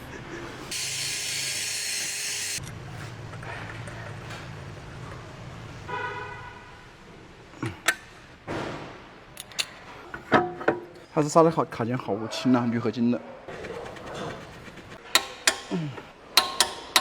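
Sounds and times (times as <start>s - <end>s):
loud high hiss: 0.7s - 2.6s
sharp knocks: 15.0s - 17.0s.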